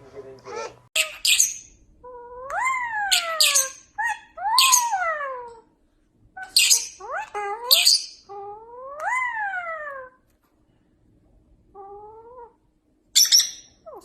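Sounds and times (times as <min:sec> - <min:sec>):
parrot squawking and wailing: 0:00.4 - 0:05.7, 0:06.3 - 0:10.2, 0:11.7 - 0:14.0.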